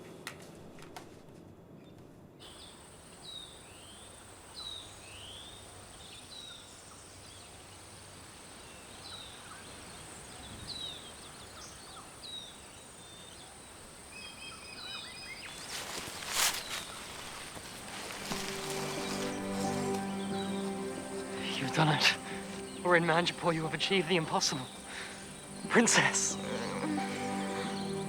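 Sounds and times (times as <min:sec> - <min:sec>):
birds chirping: 0:02.4 - 0:28.0
steady background hiss: 0:02.4 - 0:28.0
high insect-like whine: 0:15.5 - 0:28.0.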